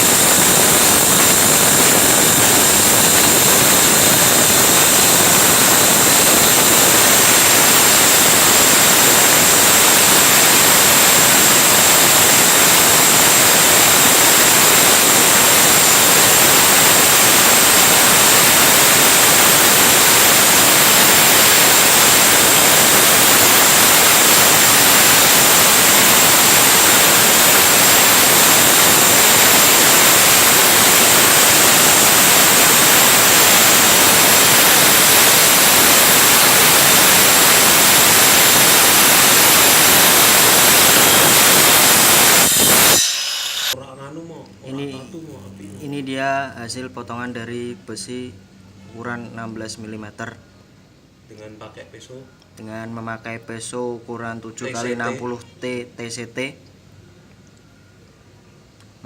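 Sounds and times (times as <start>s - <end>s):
circular saw cutting metal: 0.0s - 43.8s.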